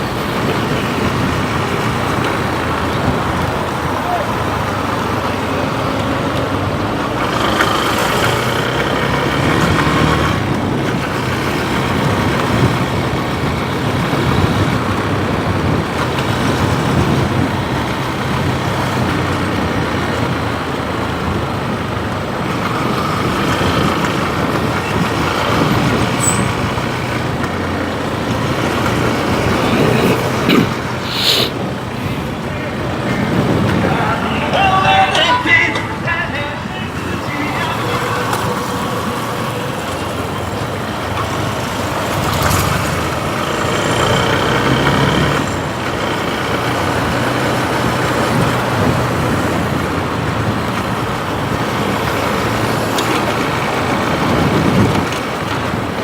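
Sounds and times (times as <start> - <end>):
motorcycle engine and road noise: 0.0 - 56.0
traffic: 0.0 - 56.0.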